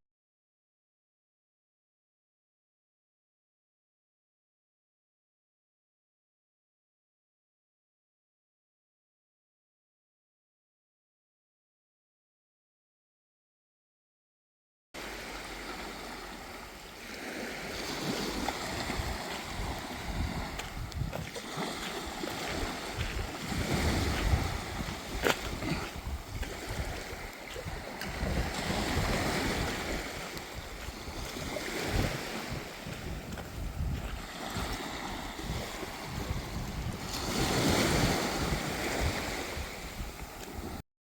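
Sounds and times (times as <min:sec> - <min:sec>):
sea waves on a beach: 0:15.0 - 0:40.8
wind buffeting microphone: 0:15.5 - 0:40.8.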